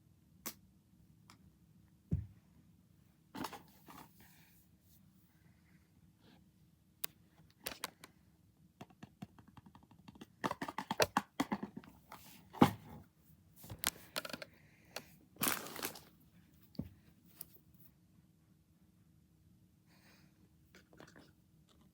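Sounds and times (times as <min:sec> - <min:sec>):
packaging crinkling and tearing: 0:15.4 - 0:16.1.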